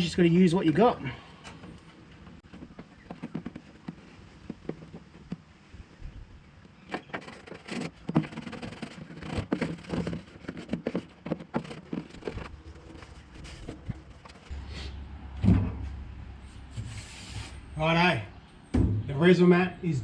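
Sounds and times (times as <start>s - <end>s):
foil mat scraping and crackling: 6.8s - 14.5s
loud thump: 15.4s - 16.0s, 18.7s - 19.1s.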